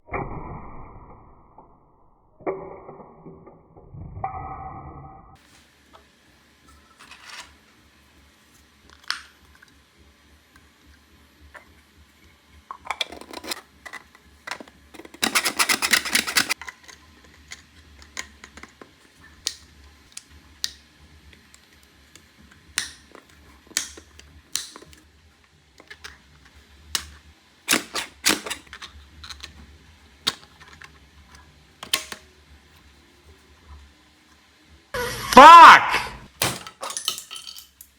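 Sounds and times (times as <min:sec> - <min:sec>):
plastic toy clicking and clacking: 0:12.8 - 0:20.8, 0:22.8 - 0:25.0, 0:27.7 - 0:29.6, 0:31.8 - 0:32.2.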